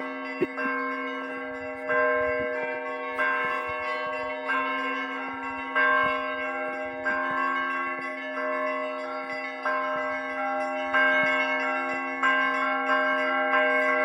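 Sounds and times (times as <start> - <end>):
church bells ringing: 0.0 - 14.0.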